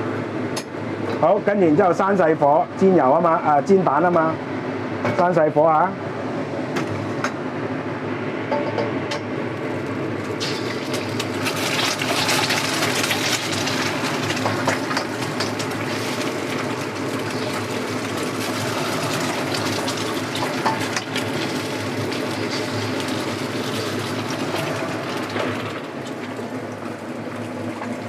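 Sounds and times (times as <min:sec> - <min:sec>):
steady background hum: 0:00.0 - 0:28.0
oil sizzling and crackling: 0:09.6 - 0:28.0.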